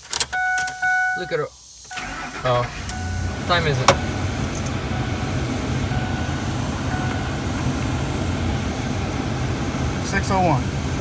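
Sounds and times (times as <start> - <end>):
pickup engine rumble: 0.0 - 11.0.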